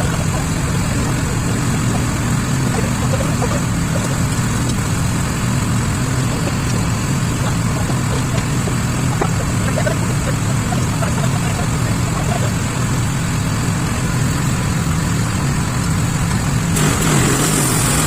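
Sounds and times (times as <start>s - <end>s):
sawmill machinery hum: 0.0s - 18.0s.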